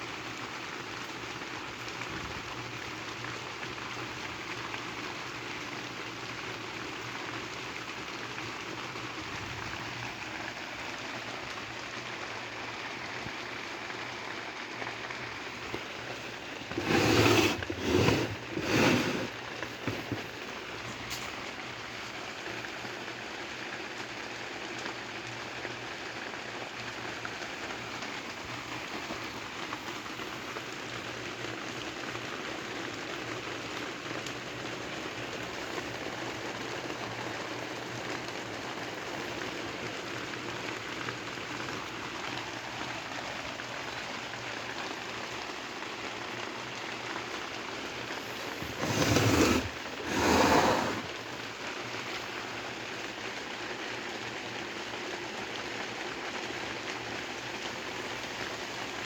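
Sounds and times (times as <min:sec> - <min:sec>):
well pump hissing and rattling: 0:15.6 - 0:21.4, 0:48.1 - 0:51.4.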